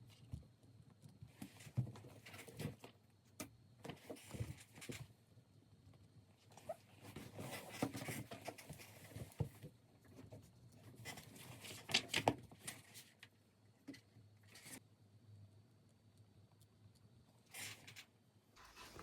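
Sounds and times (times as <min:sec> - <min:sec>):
paper rustling: 0:18.6 - 0:19.0.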